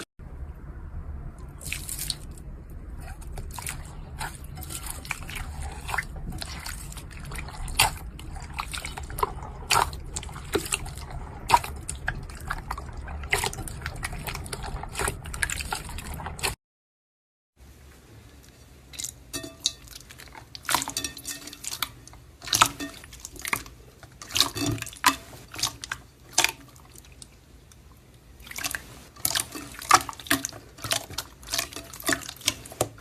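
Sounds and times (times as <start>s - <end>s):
steady low hum: 0.0s - 16.6s.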